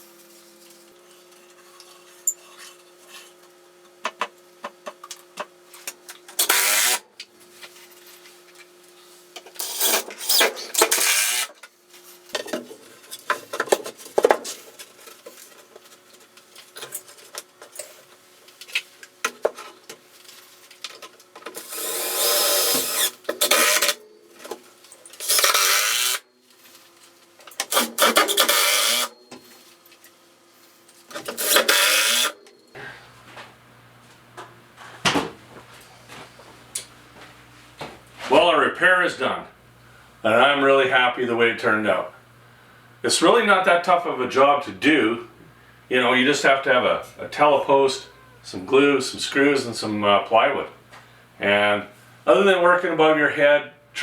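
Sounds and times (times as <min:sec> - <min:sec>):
power drill driving screws: 0:06.4 - 0:07.0, 0:09.6 - 0:11.6, 0:21.6 - 0:24.0, 0:25.2 - 0:26.2, 0:27.7 - 0:29.1, 0:31.2 - 0:32.4.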